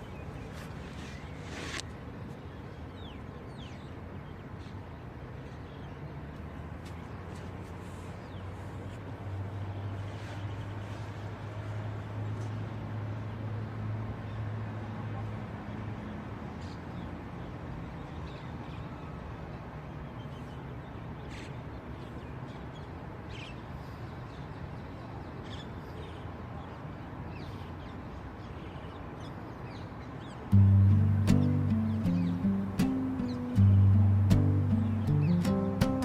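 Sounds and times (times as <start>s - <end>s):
bird calls: 30.5s - 36.0s
low hum: 30.6s - 36.0s.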